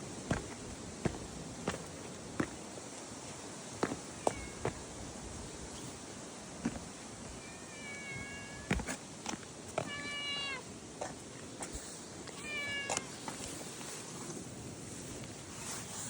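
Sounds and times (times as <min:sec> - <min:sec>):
cat meowing: 0:04.2 - 0:04.6, 0:07.4 - 0:08.8, 0:09.8 - 0:10.7, 0:12.4 - 0:13.2.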